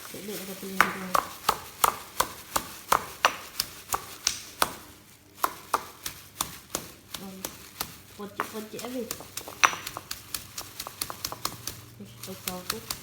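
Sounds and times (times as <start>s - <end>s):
pestle pounding in a mortar: 0.6s - 13.0s.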